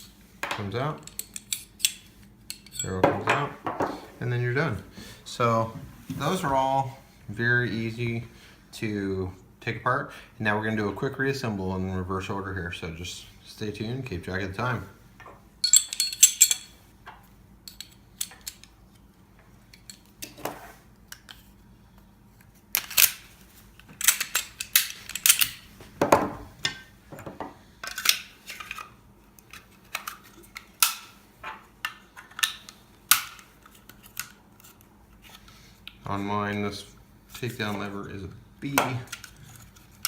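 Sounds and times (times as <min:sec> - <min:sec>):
metallic clicks of pistol parts: 0:01.0 - 0:03.0, 0:17.6 - 0:18.8, 0:22.7 - 0:23.2, 0:24.0 - 0:25.6.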